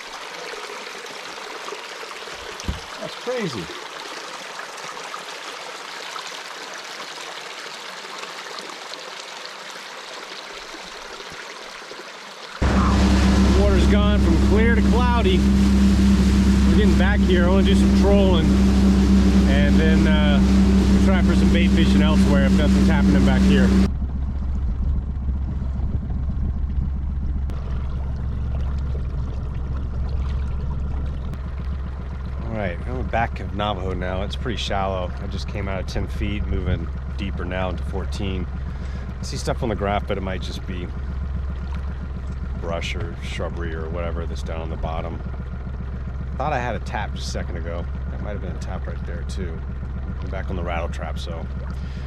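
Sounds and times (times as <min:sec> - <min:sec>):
water gushing: 0:00.0 - 0:23.9, 0:27.5 - 0:40.9
water washing along hull: 0:12.5 - 0:26.4, 0:27.5 - 0:52.0
outboard engine running: 0:12.6 - 0:52.0.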